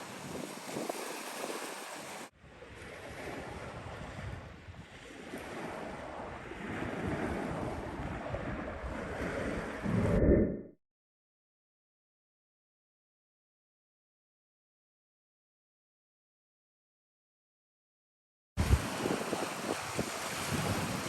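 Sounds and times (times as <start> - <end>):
sea surf: 0.0 - 10.4, 18.6 - 21.0
wind buffeting microphone: 0.0 - 10.7, 18.6 - 21.0.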